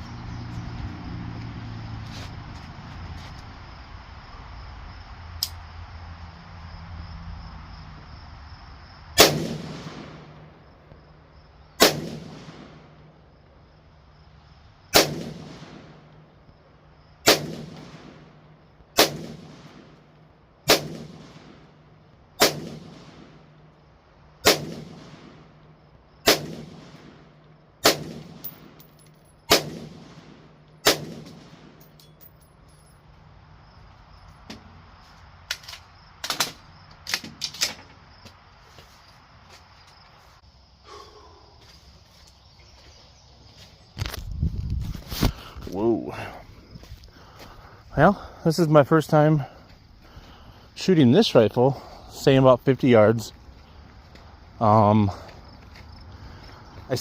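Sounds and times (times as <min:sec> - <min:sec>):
rifle shots with echo: 0:09.2 - 0:10.6, 0:11.8 - 0:13.0, 0:15.0 - 0:16.2, 0:17.3 - 0:18.4, 0:19.0 - 0:20.0, 0:20.7 - 0:21.8, 0:22.4 - 0:23.5, 0:24.4 - 0:25.6, 0:26.2 - 0:28.8, 0:29.5 - 0:31.8.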